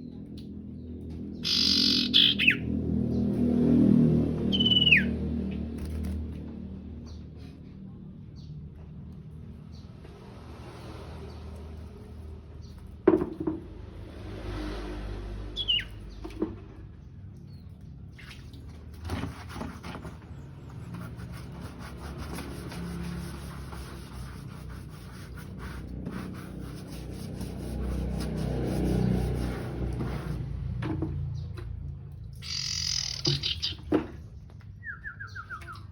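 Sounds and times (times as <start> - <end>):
falling songbird call: 1.4 - 2.6, 4.5 - 5.1, 32.4 - 33.8.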